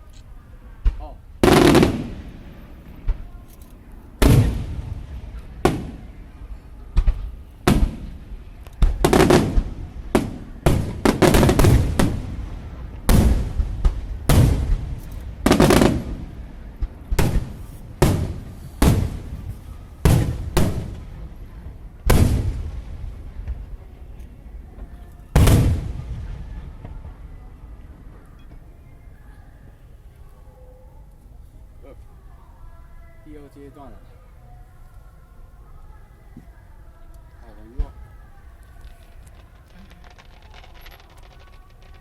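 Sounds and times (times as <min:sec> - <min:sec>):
firework shells bursting: 0:01.4 - 0:03.5, 0:07.0 - 0:21.3, 0:38.5 - 0:42.0.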